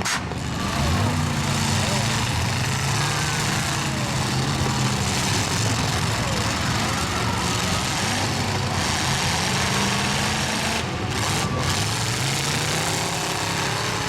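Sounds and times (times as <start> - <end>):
truck engines revving: 0.0 - 14.0.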